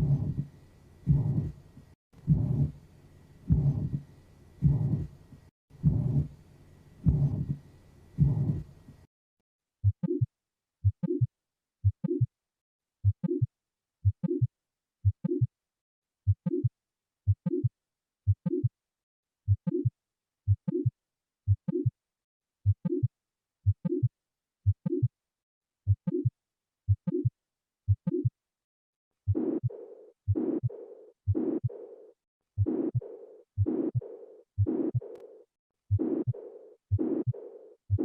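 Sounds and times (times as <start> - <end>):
heartbeat: 0.0 - 1.6, 2.2 - 2.8, 3.4 - 6.4, 7.0 - 7.6, 8.2 - 8.7, 9.8 - 12.3, 13.0 - 15.5, 16.3 - 16.7, 17.3 - 17.7, 18.3 - 18.7, 19.5 - 19.9, 20.5 - 20.9, 21.5 - 21.9, 22.6 - 25.1, 25.9 - 26.3, 26.9 - 27.3, 27.9 - 28.3, 29.3 - 31.8, 32.6 - 38.0.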